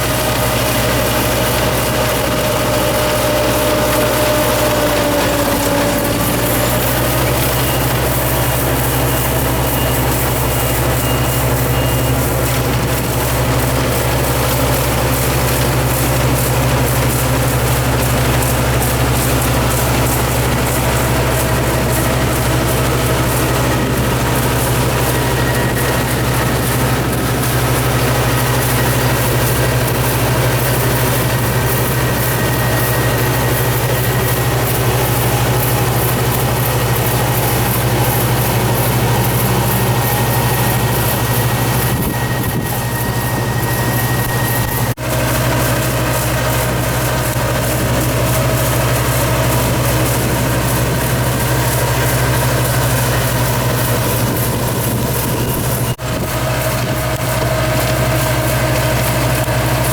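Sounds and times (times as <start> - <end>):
machine engine humming: 0.0 - 59.9.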